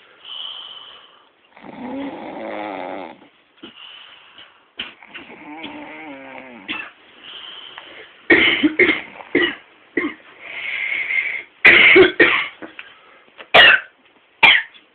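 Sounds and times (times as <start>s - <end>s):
breathy hiss: 0.0s - 8.4s, 10.3s - 11.6s.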